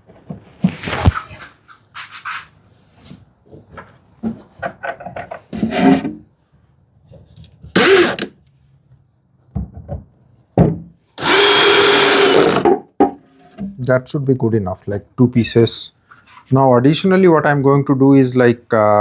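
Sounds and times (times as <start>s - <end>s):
cordless drill driving screws: 7.8s - 8.3s, 11.2s - 12.7s.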